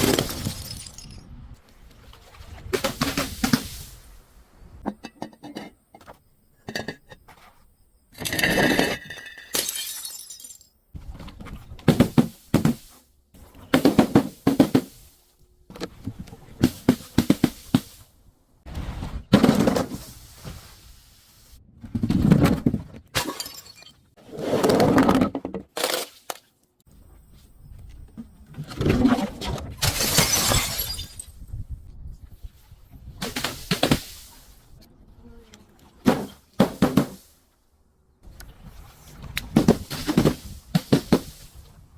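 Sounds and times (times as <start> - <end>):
glass bottles shattering: 0.0 - 1.3, 8.2 - 10.8, 23.2 - 24.1, 29.8 - 31.4
objects smashing and crunching: 0.0 - 1.4, 28.9 - 31.4.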